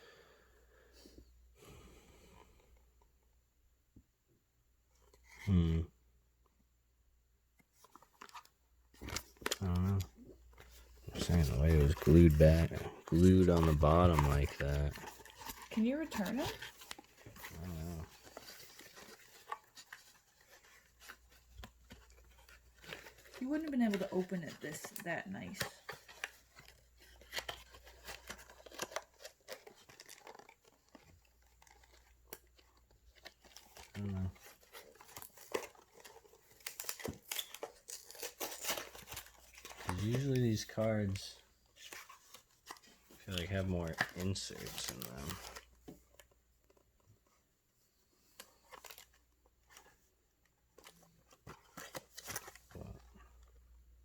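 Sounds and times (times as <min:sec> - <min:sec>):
wrapper and cardboard crinkling: 0:07.7 - 0:54.0.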